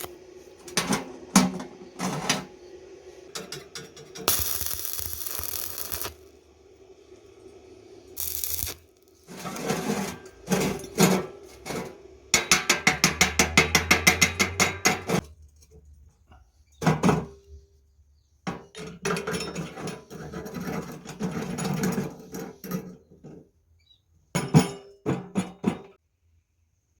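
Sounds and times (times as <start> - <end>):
metal scraping and clattering: 0.0 - 2.6, 3.3 - 6.4, 7.0 - 15.3, 18.5 - 23.5.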